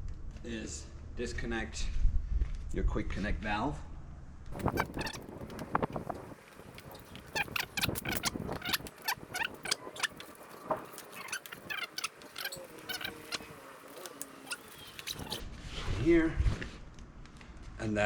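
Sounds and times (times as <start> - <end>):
birds chirping: 4.6 - 15.4.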